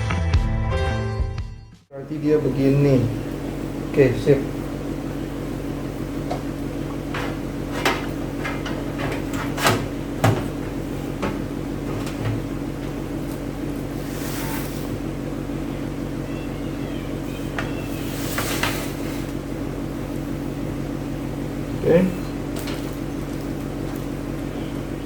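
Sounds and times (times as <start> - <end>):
steady low hum: 1.9 - 25.0.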